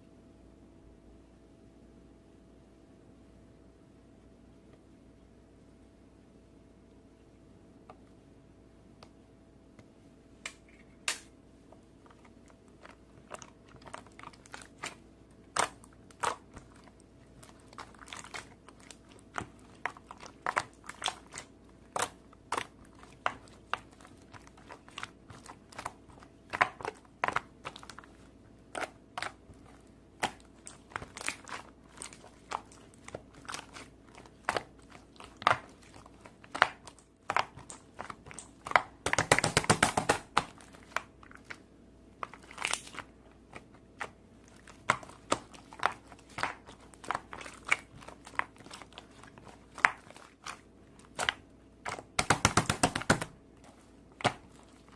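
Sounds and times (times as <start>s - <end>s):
slime popping and crackling: 12.1s - 53.6s, 54.2s - 54.9s.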